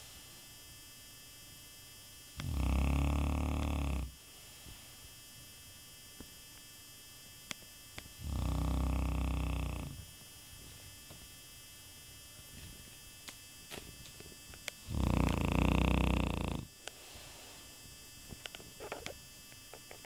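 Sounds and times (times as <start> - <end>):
dog snoring: 2.4 - 4.2, 8.2 - 10.1, 14.8 - 16.7.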